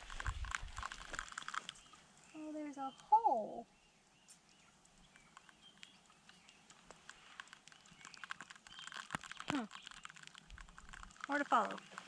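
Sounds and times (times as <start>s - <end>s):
faint bird chirping: 1.3s - 12.0s.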